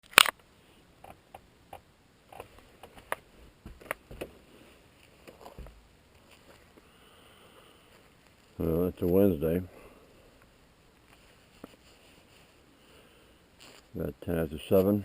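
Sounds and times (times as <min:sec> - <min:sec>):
sharp clicks and light knocks: 0:01.0 - 0:04.3
dull thumps: 0:02.4 - 0:04.4, 0:05.3 - 0:05.9.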